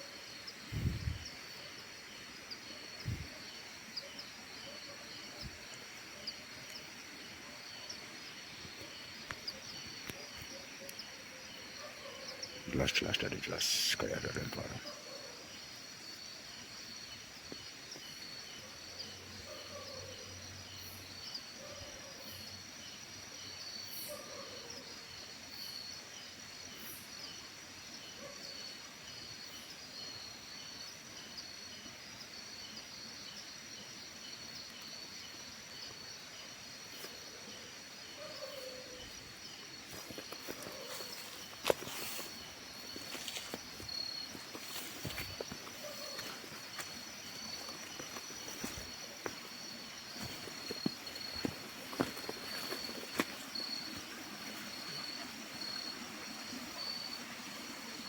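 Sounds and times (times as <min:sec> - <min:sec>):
insects trilling: 0:00.0 - 0:58.0
pulsed insect chirping: 0:37.9 - 0:55.9.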